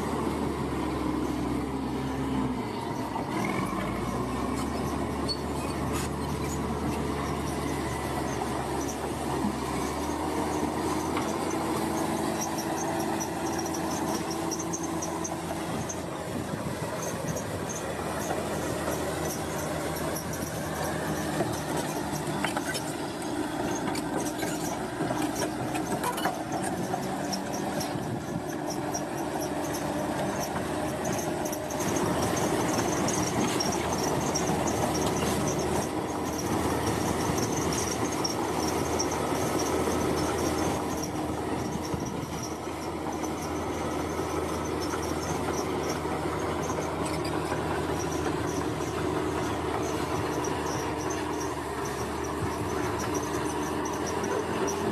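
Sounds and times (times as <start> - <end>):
diesel engine running under load: 0.0 - 54.9
steel crawler tracks squealing: 0.0 - 54.9.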